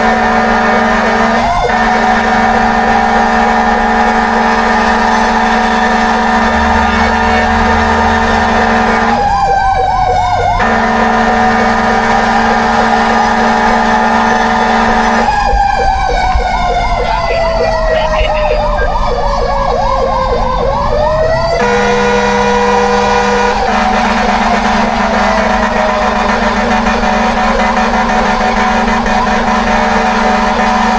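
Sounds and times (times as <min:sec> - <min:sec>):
fire truck siren: 0:00.0 - 0:30.9
siren fast yelp: 0:00.0 - 0:30.9
siren slow wail: 0:00.0 - 0:30.9.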